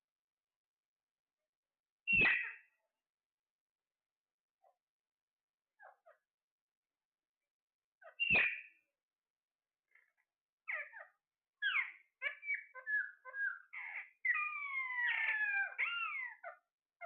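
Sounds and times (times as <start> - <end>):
parrot chirps and squawks: 2.1 - 2.8, 5.8 - 6.2, 8.0 - 8.8, 9.9 - 16.7.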